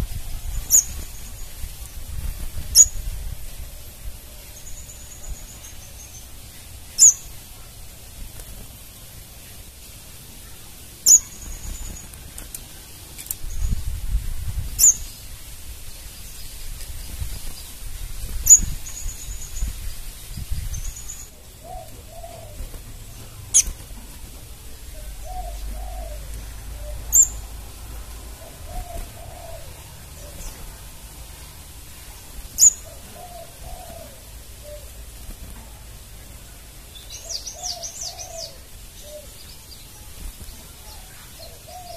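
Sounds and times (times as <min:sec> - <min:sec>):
high bird trill: 0:00.5 - 0:01.6, 0:02.7 - 0:03.1, 0:04.0 - 0:07.5, 0:10.4 - 0:12.2, 0:14.8 - 0:15.2, 0:25.0 - 0:27.6, 0:32.6 - 0:34.9
bird chip calls: 0:11.0 - 0:12.2, 0:25.0 - 0:27.4.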